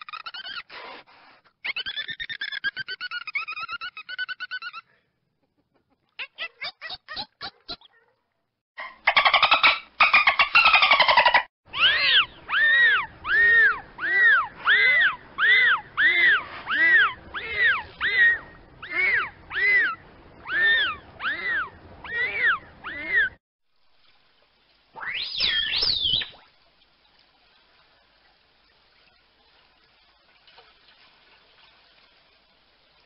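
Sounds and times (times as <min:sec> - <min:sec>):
dolphin whistles: 0:25.0 - 0:26.4.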